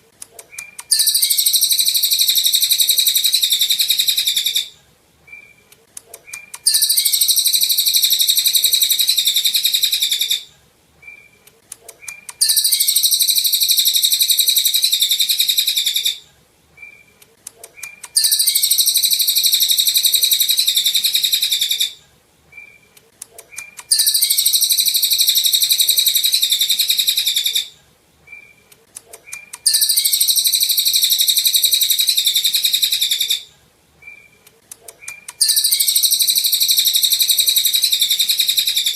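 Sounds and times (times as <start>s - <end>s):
songbird singing rapid bursts: 0.6s - 4.7s, 6.3s - 10.4s, 12.0s - 16.2s, 17.8s - 22.0s, 23.5s - 27.7s, 29.3s - 33.4s, 35.0s - 38.9s.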